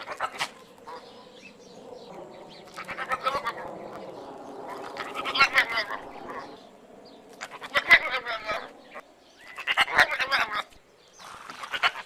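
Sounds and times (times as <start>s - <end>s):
animal wavering cries: 0.0s - 6.7s, 7.4s - 10.8s.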